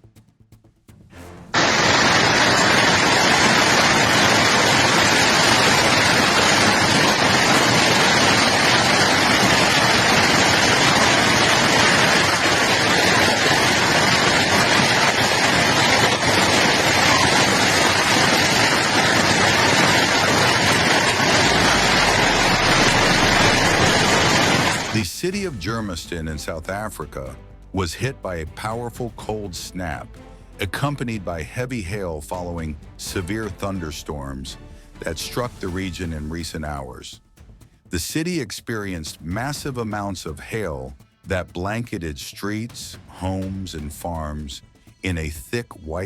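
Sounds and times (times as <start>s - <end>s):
hail and torrential rain: 1.6s - 25.1s.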